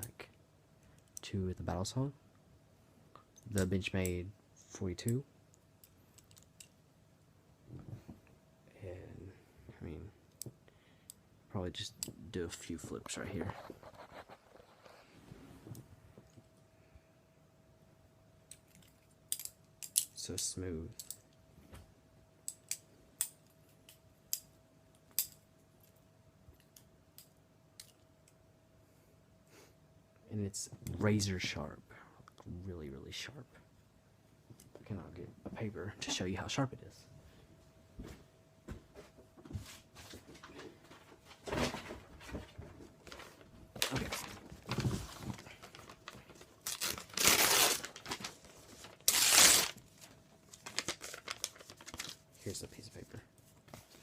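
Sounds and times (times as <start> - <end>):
paper crinkling and rustling: 40.0 - 54.0.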